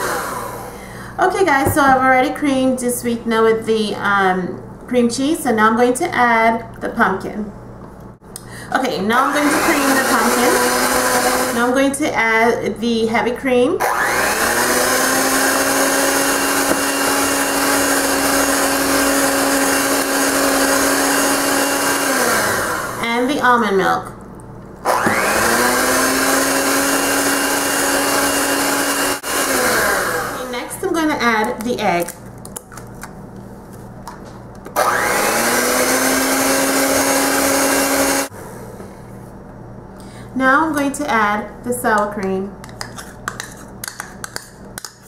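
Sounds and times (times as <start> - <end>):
electric mixer motor whine: 0.0 - 0.8, 9.2 - 11.7, 13.8 - 23.0, 24.8 - 30.6, 34.8 - 38.3.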